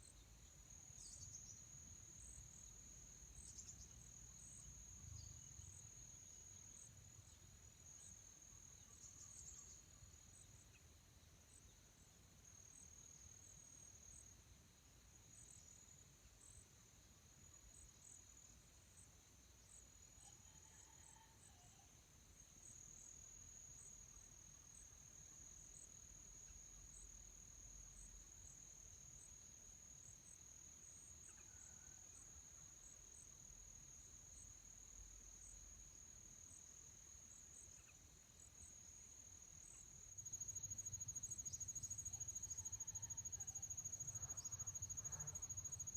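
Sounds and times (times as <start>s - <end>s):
high-pitched insect chorus: 0.0s - 10.9s, 22.6s - 45.9s.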